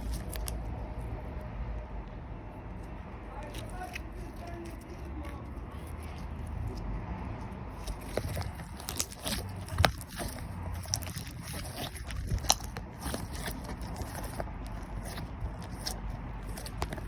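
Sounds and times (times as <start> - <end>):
slime crackling and popping: 7.7 - 17.0.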